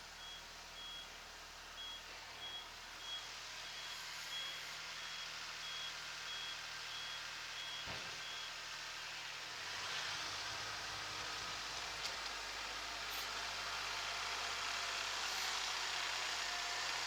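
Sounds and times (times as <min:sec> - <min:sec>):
reversing buzzer beeping: 0:01.8 - 0:08.5.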